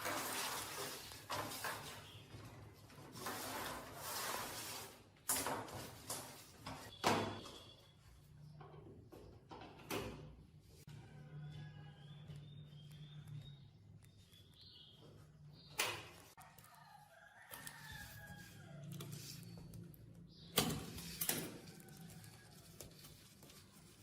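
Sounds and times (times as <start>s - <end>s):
scraping and rubbing on metal: 0.0s - 6.9s.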